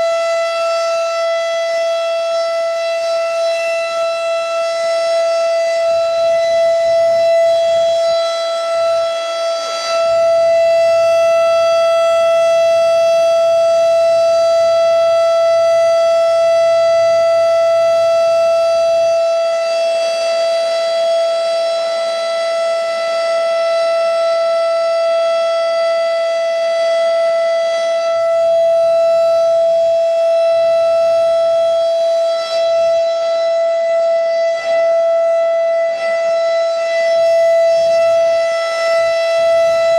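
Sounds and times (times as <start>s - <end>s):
siren high-pitched single tone: 26.8s - 39.9s.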